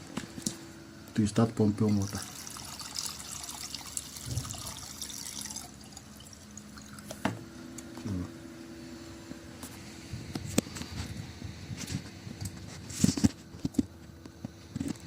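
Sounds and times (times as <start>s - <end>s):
faint steady hum: 0.0s - 15.0s
water pouring and splashing: 2.0s - 7.1s.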